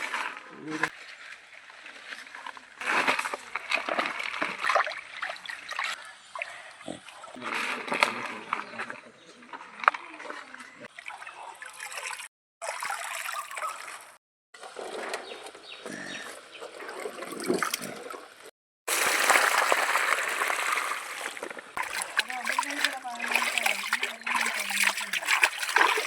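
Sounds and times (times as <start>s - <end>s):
water trickling and splashing: 0.9s - 8.9s, 9.8s - 15.6s, 16.6s - 26.0s
rush of water: 18.9s - 26.0s.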